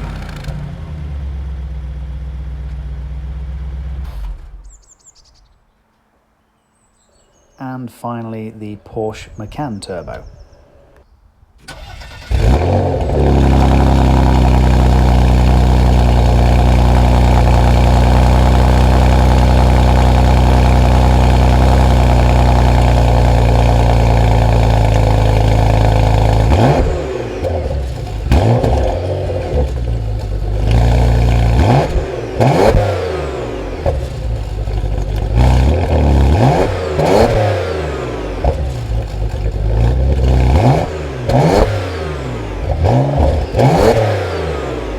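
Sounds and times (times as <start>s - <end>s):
car engine starting and idling: 0.0s - 5.0s, 11.6s - 44.9s
short throttle revs: 11.6s - 44.9s.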